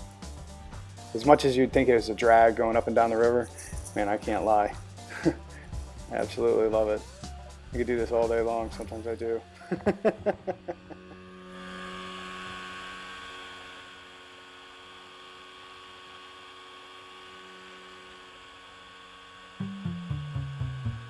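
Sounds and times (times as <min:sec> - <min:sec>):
plucked music: 0:00.0 - 0:10.0, 0:19.6 - 0:21.0
music with bass beat: 0:00.0 - 0:10.3, 0:19.6 - 0:21.0
boat motor humming: 0:00.0 - 0:21.0.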